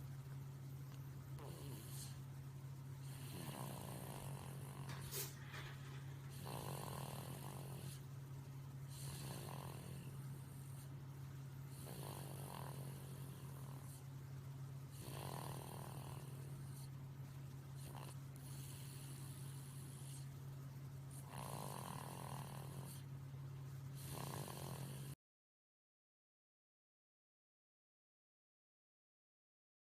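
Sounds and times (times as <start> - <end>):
steady low hum: 0.0 - 25.2
baby snoring softly: 1.4 - 2.3, 3.0 - 8.1, 8.9 - 11.0, 11.7 - 14.1, 14.9 - 17.0, 17.8 - 20.3, 21.2 - 23.1, 23.9 - 25.2.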